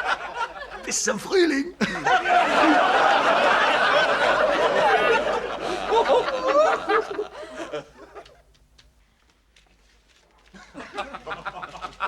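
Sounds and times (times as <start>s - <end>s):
studio audience laughing: 0.0s - 1.0s, 1.8s - 8.4s, 10.6s - 12.0s.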